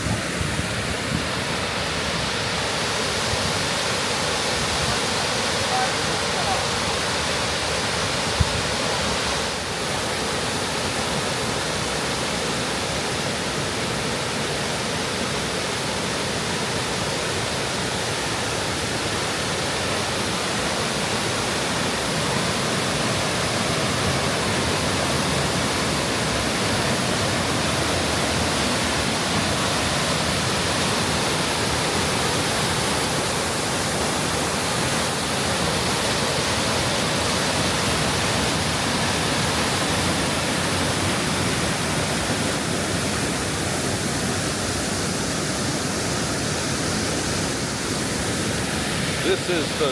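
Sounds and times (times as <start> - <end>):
large waterfall rushing: 0.0 - 49.9.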